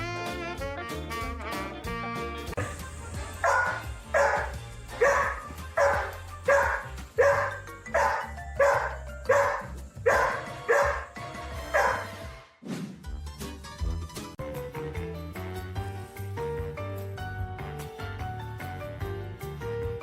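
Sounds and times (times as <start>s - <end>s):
background music with bass line: 0.0s - 20.0s
dog barking: 3.4s - 12.2s.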